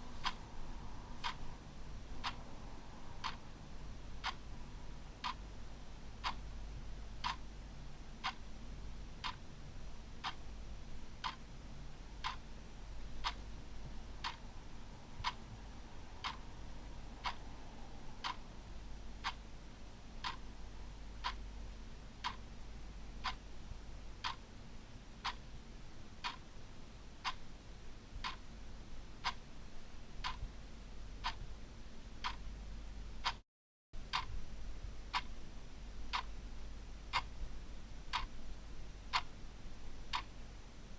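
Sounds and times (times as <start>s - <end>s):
faint low hum: 0.0s - 33.4s, 34.0s - 40.9s
clock ticking: 0.1s - 0.4s, 1.2s - 1.5s, 3.2s - 3.4s, 4.2s - 4.5s, 5.2s - 5.4s, 6.2s - 6.4s, 7.2s - 7.4s, 9.2s - 9.4s, 11.2s - 11.4s, 12.2s - 12.4s, 13.2s - 13.4s, 14.2s - 14.4s, 15.2s - 15.4s, 19.2s - 19.4s, 20.2s - 20.4s, 22.2s - 22.4s, 23.2s - 23.4s, 24.2s - 24.4s, 30.2s - 30.4s, 31.2s - 31.4s, 32.2s - 32.4s, 34.1s - 34.4s, 35.1s - 35.3s, 36.1s - 36.3s, 37.1s - 37.3s, 38.1s - 38.4s.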